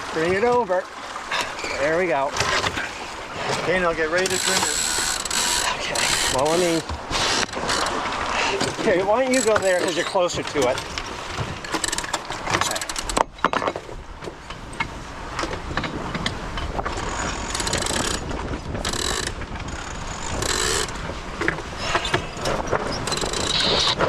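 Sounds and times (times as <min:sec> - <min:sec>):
winch ratchet clicking: 0:04.2 - 0:08.0, 0:17.0 - 0:18.2, 0:18.8 - 0:20.9, 0:23.0 - 0:23.9.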